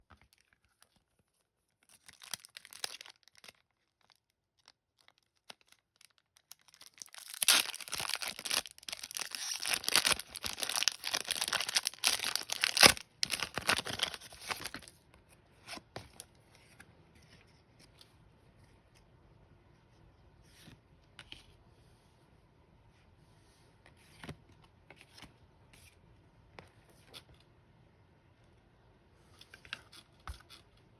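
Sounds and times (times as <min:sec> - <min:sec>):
wrapper tearing and crinkling: 0:02.0 - 0:14.9.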